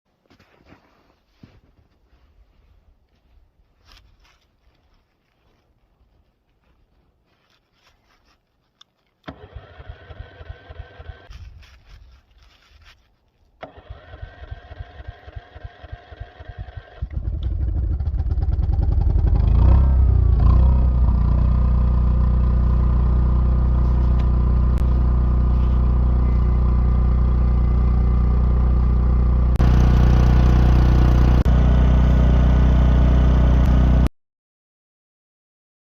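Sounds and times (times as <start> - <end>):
starter cranking engine: 9.2 - 11.3, 13.6 - 19.6
generator engine running: 9.3 - 11.3, 13.6 - 34.1.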